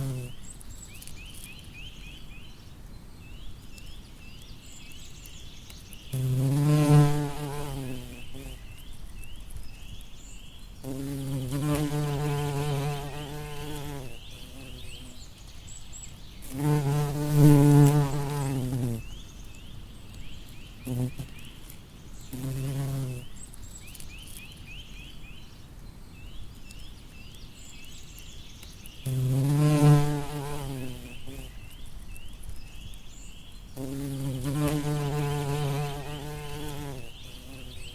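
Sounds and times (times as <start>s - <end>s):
bumblebee buzzing past: 6.1s - 8.6s, 10.8s - 15.2s, 16.4s - 19.0s, 22.3s - 23.3s, 29.0s - 31.5s, 33.8s - 37.9s.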